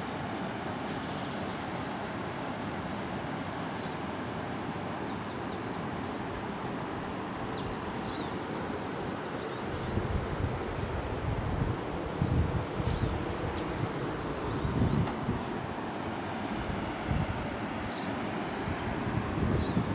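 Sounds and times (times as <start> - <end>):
small birds chirping: 1.1 - 2.2, 3.2 - 4.1, 4.9 - 6.4, 7.5 - 10.2, 12.2 - 15.6, 17.8 - 18.3, 19.4 - 19.9
wind buffeting microphone: 9.7 - 19.9.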